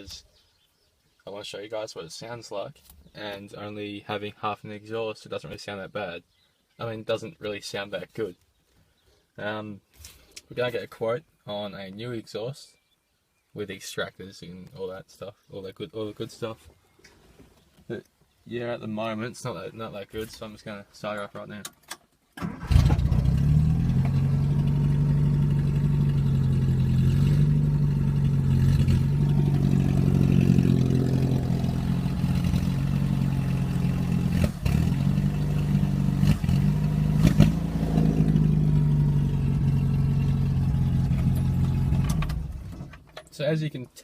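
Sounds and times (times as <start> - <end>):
car engine starting and running: 22.4 - 43.3.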